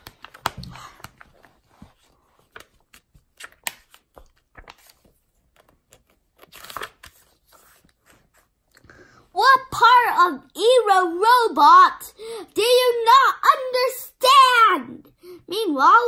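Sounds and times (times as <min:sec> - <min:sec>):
book pages rustling: 0:00.0 - 0:08.9.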